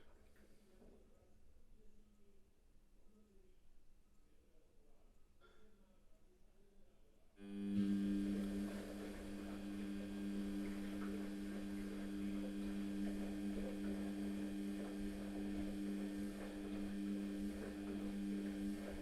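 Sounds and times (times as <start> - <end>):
washing machine running: 7.4 - 19.0.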